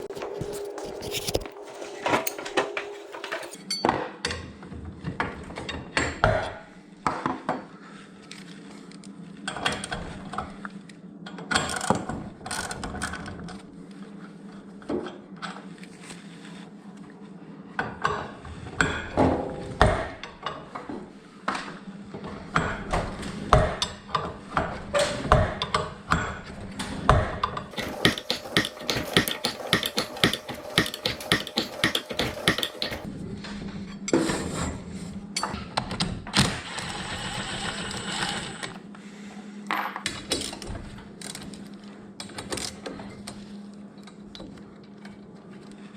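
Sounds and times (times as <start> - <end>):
metal clicks and clanks: 27.7 - 33.1.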